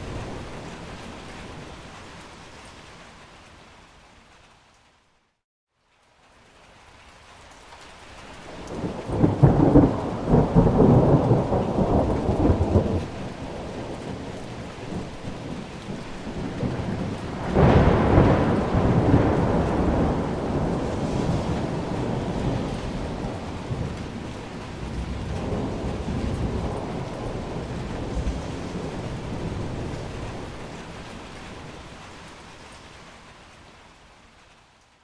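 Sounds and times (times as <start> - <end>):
steady rain: 0.0 - 35.0
thunder rumbling: 8.5 - 31.9.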